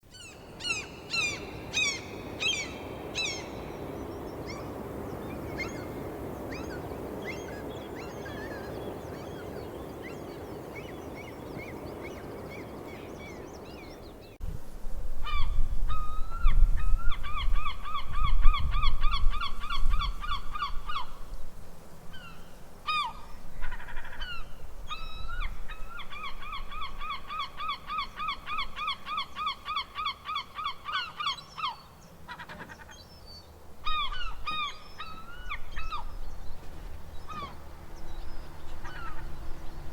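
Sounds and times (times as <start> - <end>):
steady background hiss: 0.0 - 39.9
seagulls calling: 0.1 - 14.2, 22.2 - 33.1, 33.8 - 39.9.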